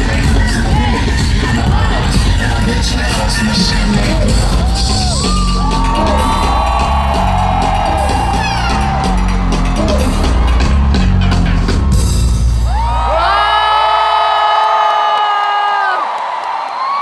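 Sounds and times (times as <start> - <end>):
bass-driven backing track: 0.0 - 13.2
crowd screaming and cheering: 0.0 - 17.0.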